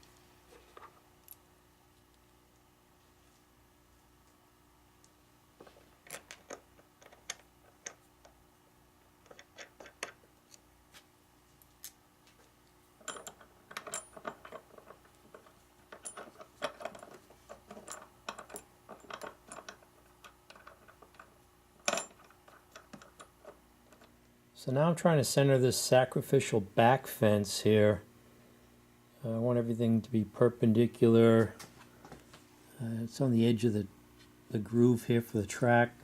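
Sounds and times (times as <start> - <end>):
small metal hardware clinking: 9.2 - 10.2, 13.0 - 24.2.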